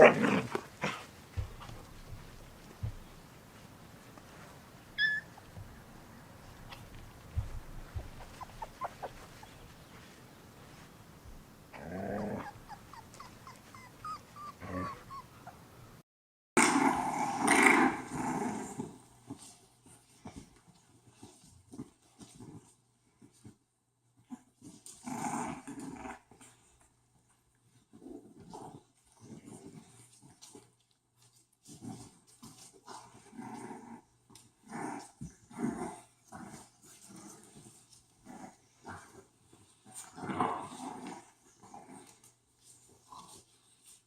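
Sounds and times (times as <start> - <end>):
faint rustling: 0.5 - 15.5
dog growling: 6.7 - 10.1, 11.7 - 15.6.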